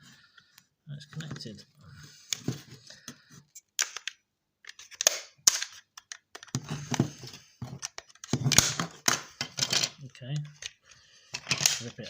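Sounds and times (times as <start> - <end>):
plastic clips cracking and snapping: 11.4 - 12.0.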